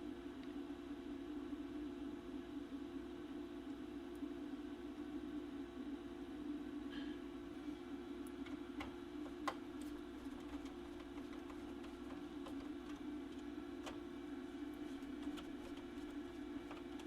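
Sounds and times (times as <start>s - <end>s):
steady low hum: 6.4s - 17.0s
light clicks from handling parts: 8.2s - 17.0s.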